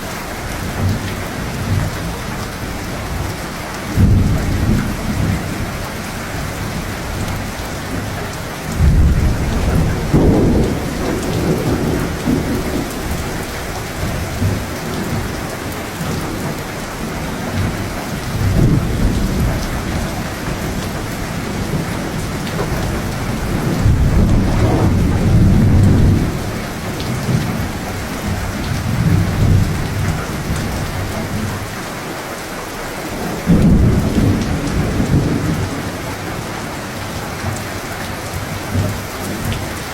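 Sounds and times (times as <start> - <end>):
steady rain falling: 0.0 - 39.9
low rolling thunder: 0.4 - 31.8, 32.8 - 39.9.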